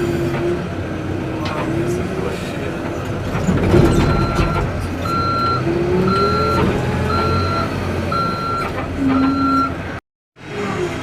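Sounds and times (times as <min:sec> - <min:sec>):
diesel engine running: 0:00.0 - 0:11.0
reversing alarm beeping: 0:04.0 - 0:09.8.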